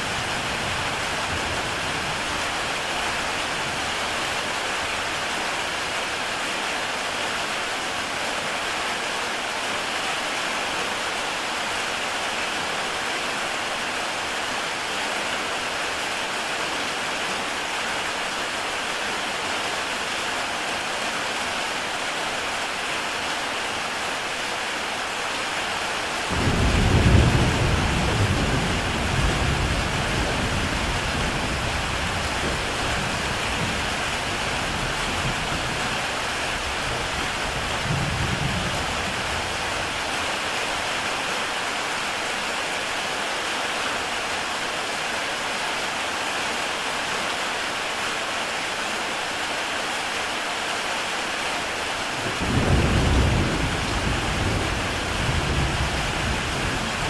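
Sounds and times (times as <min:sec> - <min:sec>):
heavy rain on a tile roof: 0:00.0 - 0:57.0
thunder rumbling: 0:26.3 - 0:35.8.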